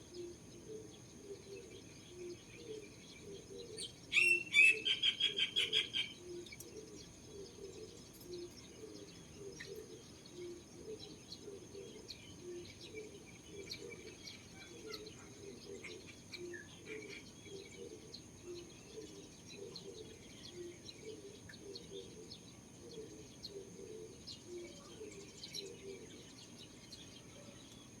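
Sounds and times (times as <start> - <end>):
low repeated bird call: 0.0 - 28.0
birds chirping: 0.1 - 28.0.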